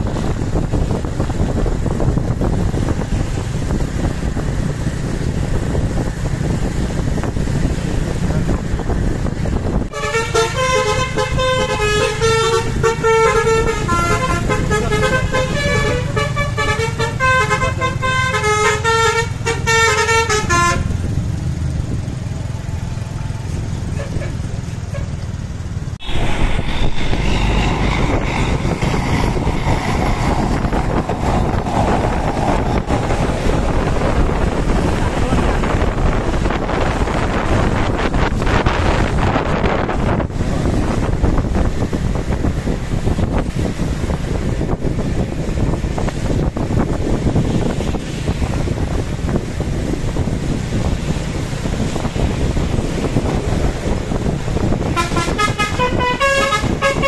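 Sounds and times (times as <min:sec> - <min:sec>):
engine and road noise: 0:00.0 - 0:57.0
multi-tone musical bus horn: 0:09.9 - 0:21.0, 0:54.8 - 0:57.0
loud rushing noise: 0:25.8 - 0:43.8.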